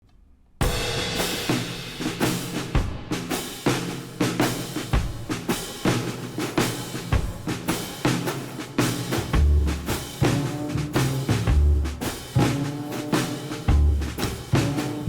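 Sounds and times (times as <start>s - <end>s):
drum beat: 0.6s - 15.0s
bass line: 9.4s - 12.0s, 13.7s - 14.9s.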